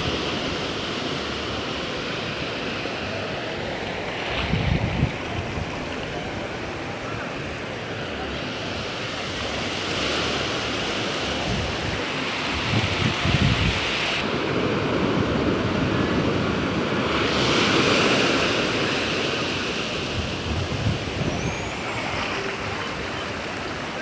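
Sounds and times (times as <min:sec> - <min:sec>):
ocean surf washing on shore: 0:00.0 - 0:24.0
wind buffeting microphone: 0:04.2 - 0:07.2, 0:11.4 - 0:13.9, 0:19.9 - 0:24.0.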